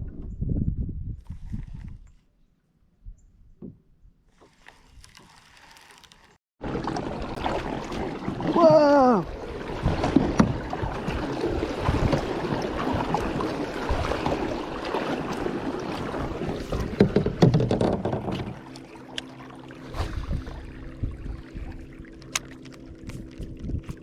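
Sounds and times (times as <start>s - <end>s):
wind noise: 0.0s - 2.2s, 9.7s - 14.6s, 19.9s - 24.0s
water noise: 4.3s - 24.0s
knocks and clatter on kayak: 9.5s - 19.2s.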